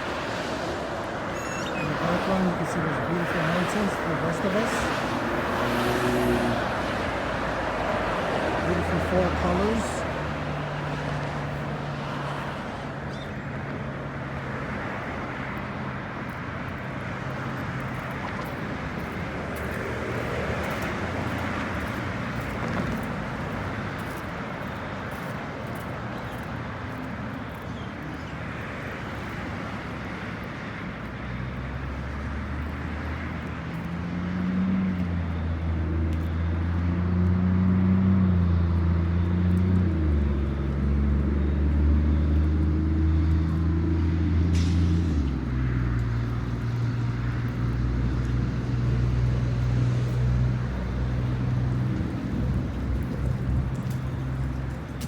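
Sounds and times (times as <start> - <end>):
road traffic: 0.0 - 55.0
heavy vehicle engine approaching: 31.3 - 55.0.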